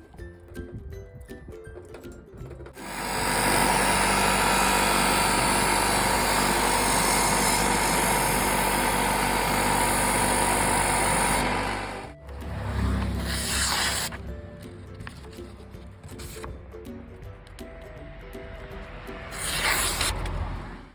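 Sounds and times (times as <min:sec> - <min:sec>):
sharpening machine grinding blade: 0:02.8 - 0:14.2.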